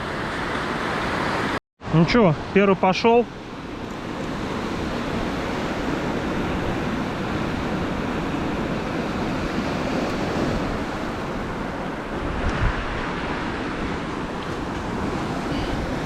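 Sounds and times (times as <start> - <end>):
sea surf: 0.0 - 16.0
wind buffeting microphone: 3.4 - 16.0.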